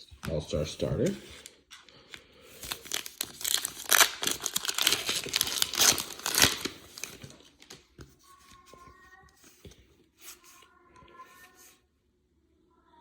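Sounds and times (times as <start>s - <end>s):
wrapper tearing and crinkling: 2.6s - 7.8s.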